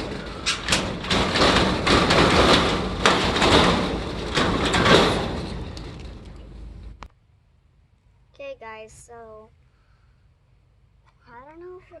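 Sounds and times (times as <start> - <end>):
door scraping and rattling: 0.0 - 7.1
latch clicks: 0.0 - 7.1.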